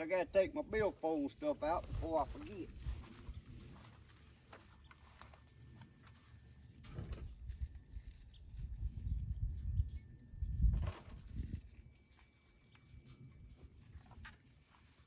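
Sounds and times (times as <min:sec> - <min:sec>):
rustling of things handled: 0:01.6 - 0:09.1
low thumps of footsteps: 0:01.7 - 0:05.3.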